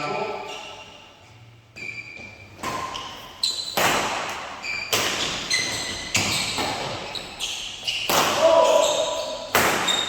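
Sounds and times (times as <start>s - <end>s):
shoes squeaking on court: 0.3s - 10.0s
rackets hitting shuttlecock: 2.6s - 7.1s, 7.9s - 10.0s.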